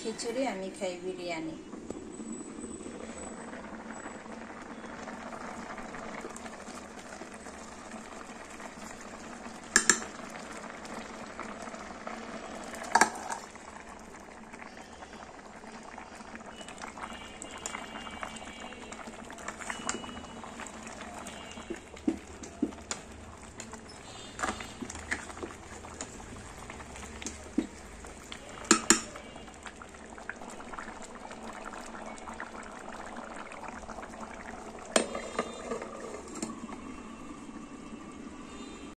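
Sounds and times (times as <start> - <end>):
pot bubbling: 0.0 - 38.9
utensil knocking against pot: 28.6 - 29.1.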